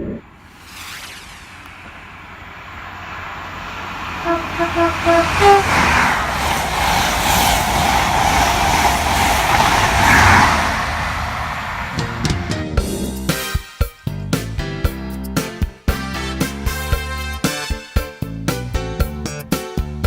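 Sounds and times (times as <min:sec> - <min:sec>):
train rushing past: 0:00.3 - 0:13.6
train horn toots: 0:04.0 - 0:06.2.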